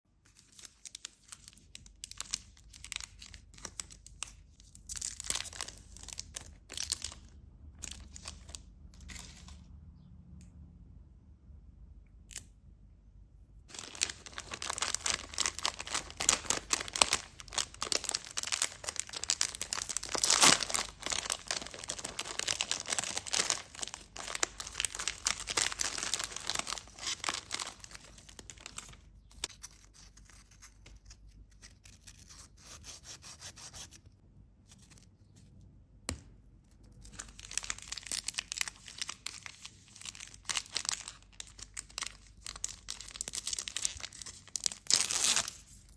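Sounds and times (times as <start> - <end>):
candy wrappers crinkling: 0.4 - 9.6, 13.7 - 30.2, 37.0 - 45.9.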